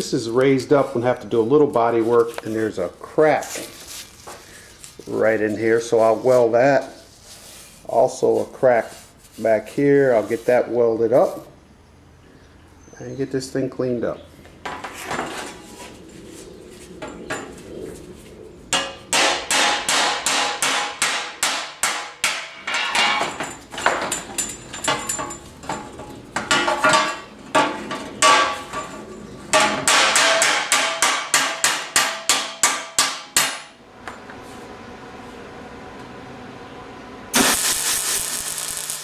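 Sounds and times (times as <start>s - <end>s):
hammer striking steel: 18.8s - 33.8s.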